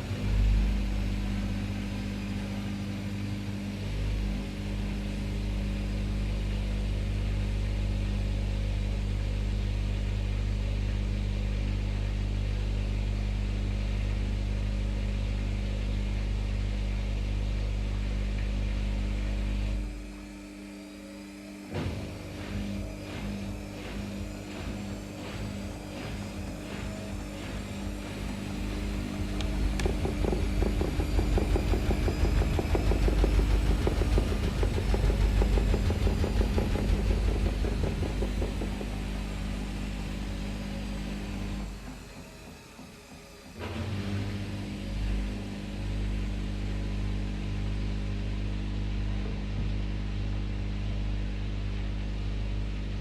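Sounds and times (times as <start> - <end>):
washing machine running: 0.0 - 53.0
washing machine drum rattling: 21.8 - 41.6.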